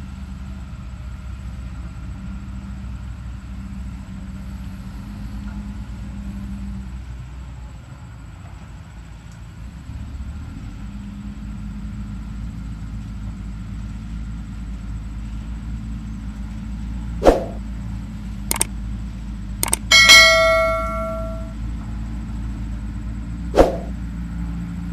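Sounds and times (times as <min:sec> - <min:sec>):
sharp metal knocks: 0:17.2 - 0:17.6, 0:19.6 - 0:21.5, 0:23.6 - 0:23.9
steel clanging on steel: 0:19.6 - 0:21.5.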